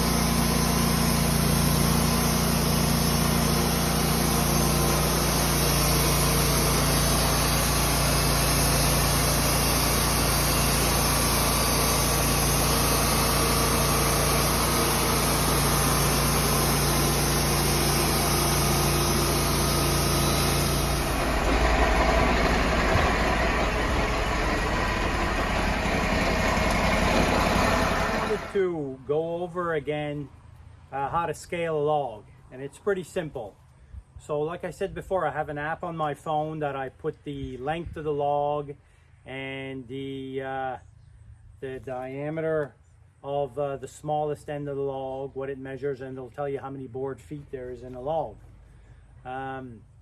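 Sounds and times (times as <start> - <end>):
engine running: 0.0 - 28.6.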